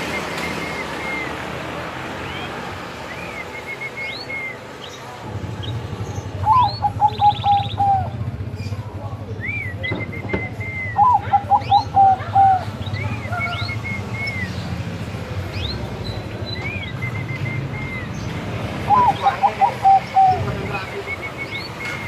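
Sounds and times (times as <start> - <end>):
high bird chirping: 0.0 - 22.0
dove cooing: 6.4 - 8.4, 10.0 - 13.7, 18.8 - 21.1.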